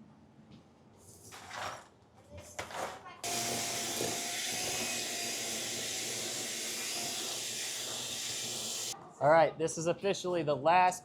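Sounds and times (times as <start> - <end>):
steady hissing rush: 4.8 - 9.0.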